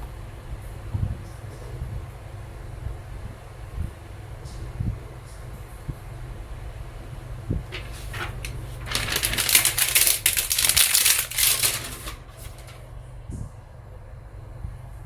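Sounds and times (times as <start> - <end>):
plastic packaging crinkling: 7.7 - 12.8.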